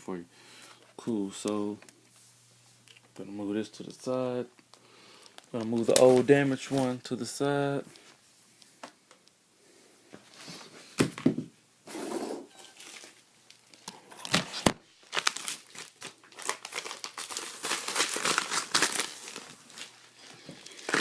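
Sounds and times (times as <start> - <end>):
plastic packaging crinkling: 4.7 - 7.0, 12.6 - 21.0.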